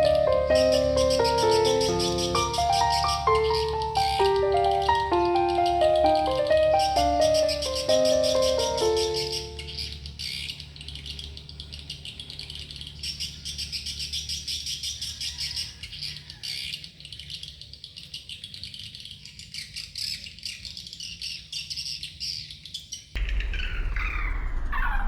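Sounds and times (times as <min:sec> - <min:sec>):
birds chirping and twittering: 0:00.0 - 0:25.0
loud low rumble: 0:23.2 - 0:25.0.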